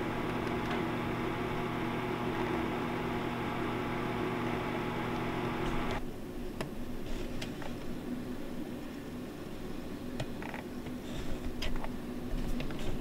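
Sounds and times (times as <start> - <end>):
appliance motor humming: 0.0 - 6.0.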